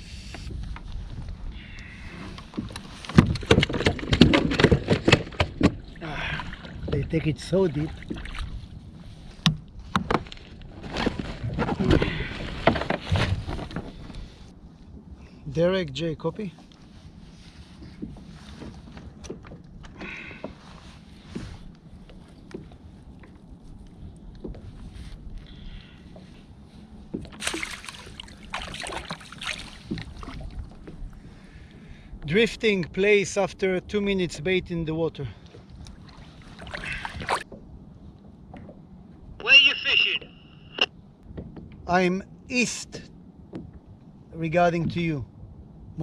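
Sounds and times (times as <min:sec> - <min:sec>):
wind rumbling on microphone: 0:00.0 - 0:39.4, 0:40.2 - 0:46.0
water washing: 0:27.2 - 0:30.7, 0:35.8 - 0:37.4
splashy scuffing rustles: 0:27.3 - 0:30.5.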